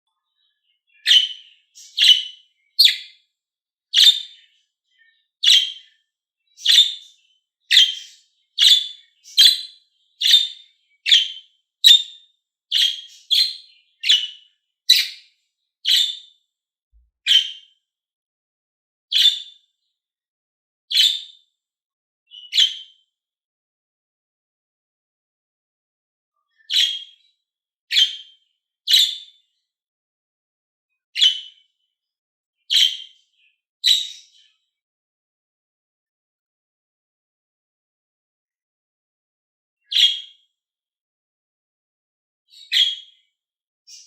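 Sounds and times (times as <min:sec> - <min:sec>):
budgerigar chirping: 0:01.0 - 0:03.2, 0:03.9 - 0:04.4, 0:05.4 - 0:05.9, 0:06.6 - 0:07.1, 0:07.7 - 0:15.2, 0:15.8 - 0:16.3, 0:17.3 - 0:17.7, 0:19.1 - 0:19.5, 0:20.9 - 0:21.3, 0:22.3 - 0:22.9, 0:26.7 - 0:27.2, 0:27.9 - 0:28.3, 0:28.9 - 0:29.3, 0:31.2 - 0:31.5, 0:32.7 - 0:33.1, 0:33.8 - 0:34.4, 0:39.9 - 0:40.3, 0:42.5 - 0:43.1.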